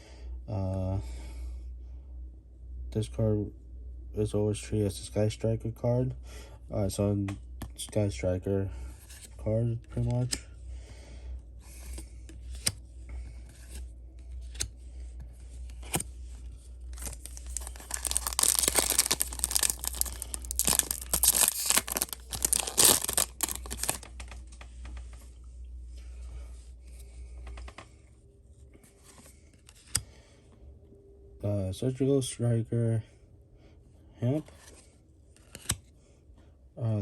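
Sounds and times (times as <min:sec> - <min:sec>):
wrapper tearing and crinkling: 0:17.0 - 0:24.0.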